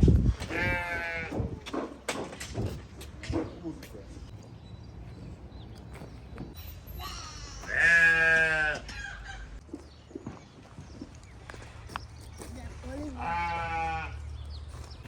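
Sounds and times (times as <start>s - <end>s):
goat or sheep bleating: 0.5s - 1.4s, 7.4s - 8.9s, 13.1s - 14.2s.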